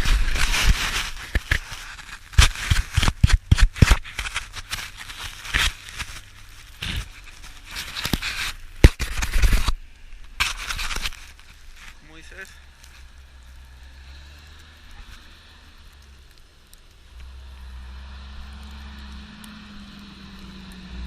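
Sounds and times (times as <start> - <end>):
footsteps crunching in snow: 0.0 - 9.8.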